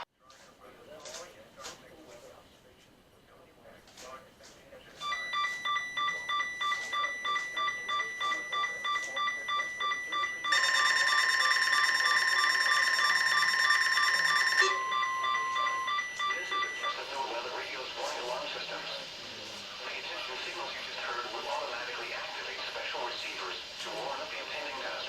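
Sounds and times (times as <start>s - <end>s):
rapid pulsing alert beep: 5.0s - 17.4s
dense alarm tone: 5.1s - 19.3s.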